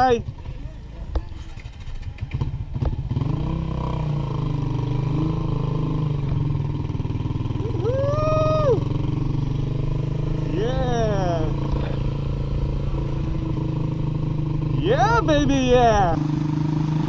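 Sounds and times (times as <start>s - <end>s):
motorcycle engine: 0.0s - 17.0s
person shouting: 7.6s - 8.9s, 10.5s - 11.6s, 14.8s - 16.2s.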